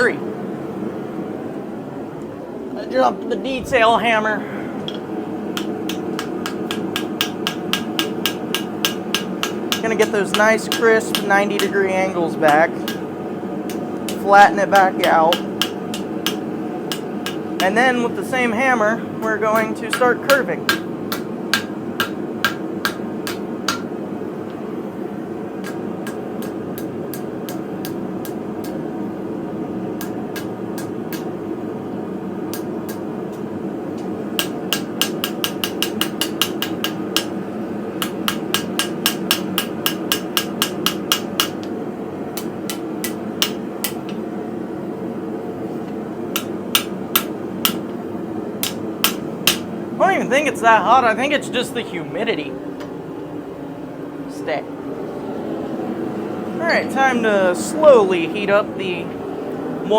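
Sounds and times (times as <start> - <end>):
steady hum: 0.0 - 59.9
hammer striking hot steel: 4.9 - 18.1, 19.2 - 24.0, 25.6 - 28.8, 30.0 - 31.4, 32.5 - 37.4, 38.0 - 41.7, 42.4 - 44.2, 46.3 - 48.0, 48.6 - 49.7.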